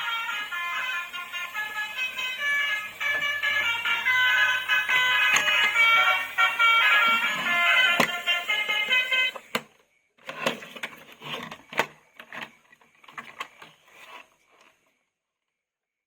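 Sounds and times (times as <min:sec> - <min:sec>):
toy beeping horn tune: 0:00.0 - 0:09.6
plastic toy parts rattling: 0:10.2 - 0:14.7.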